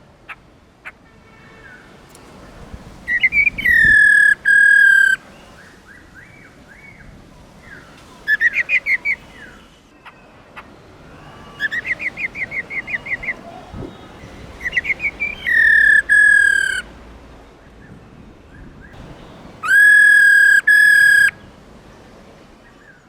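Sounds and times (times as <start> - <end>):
bird calling: 3.1 - 5.6, 8.3 - 9.6, 11.1 - 16.9, 19.0 - 21.5.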